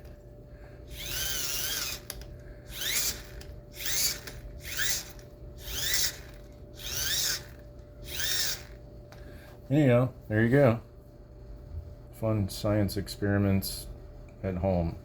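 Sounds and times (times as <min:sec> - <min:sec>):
motor whirring when spun: 0:00.9 - 0:08.8.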